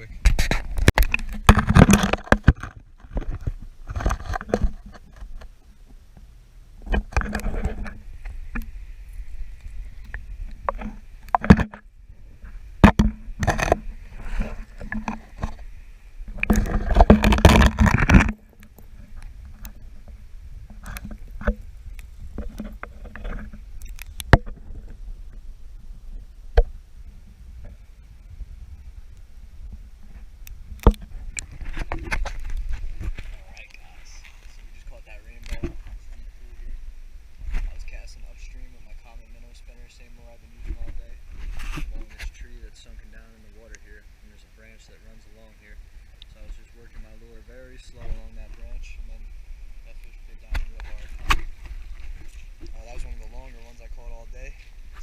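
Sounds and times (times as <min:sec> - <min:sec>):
water splashing and sloshing: 0:06.8 - 0:27.8.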